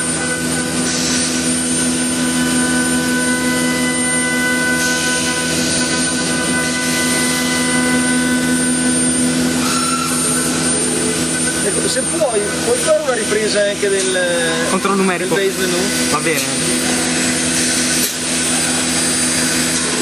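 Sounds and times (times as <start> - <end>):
woodworking machine whine: 0.0 - 20.0.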